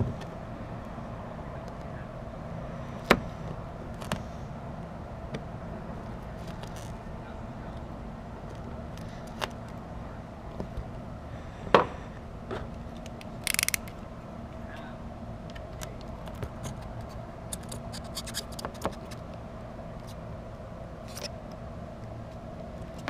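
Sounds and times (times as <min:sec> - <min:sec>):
steady low hum: 0:00.0 - 0:23.0
hand tools clicking and scraping: 0:13.0 - 0:14.0, 0:16.6 - 0:19.2.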